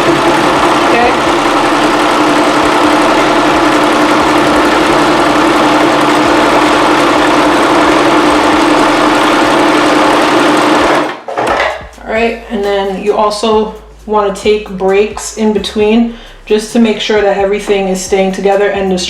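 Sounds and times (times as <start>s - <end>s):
electric sewing machine running: 0.0s - 11.2s.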